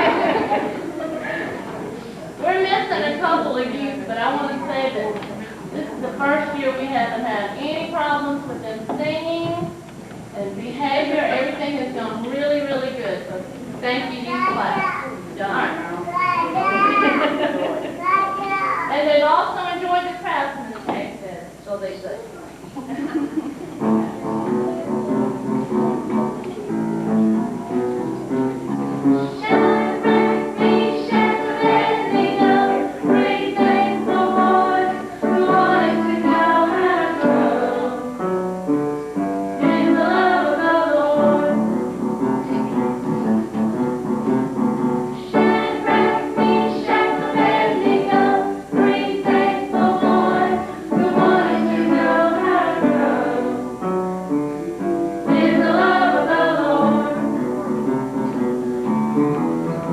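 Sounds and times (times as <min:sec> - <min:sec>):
instrumental accompaniment: 0:23.6 - 0:59.9
group singing: 0:29.0 - 0:38.3, 0:39.5 - 0:42.0, 0:45.2 - 0:54.0, 0:55.2 - 0:57.8.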